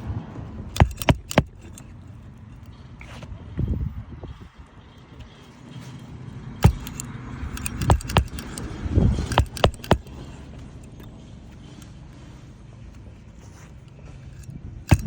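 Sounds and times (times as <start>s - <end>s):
faint metallic rattling: 0.0s - 3.1s, 4.3s - 15.0s
hammer striking nails: 0.7s - 1.8s, 6.6s - 10.2s.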